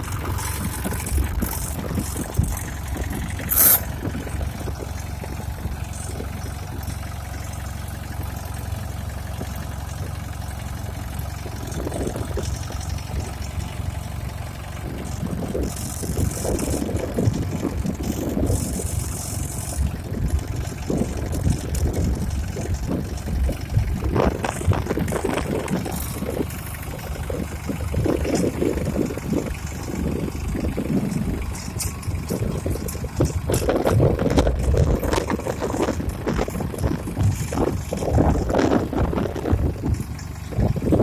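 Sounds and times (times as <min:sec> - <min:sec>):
tractor diesel engine running: 0:00.0 - 0:41.0.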